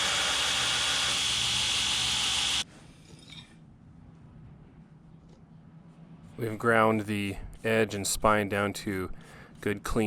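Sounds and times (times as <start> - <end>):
belt grinder grinding steel: 0.0 - 2.6.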